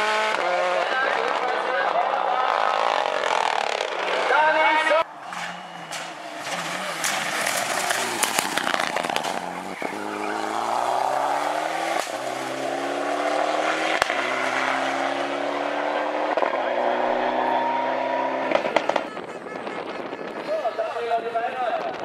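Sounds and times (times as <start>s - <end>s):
car engine accelerating: 5.0s - 19.0s.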